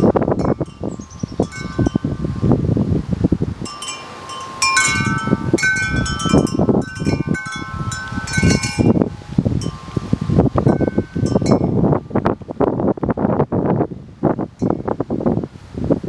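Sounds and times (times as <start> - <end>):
wind chime ringing: 0.0 - 2.6, 3.6 - 11.9.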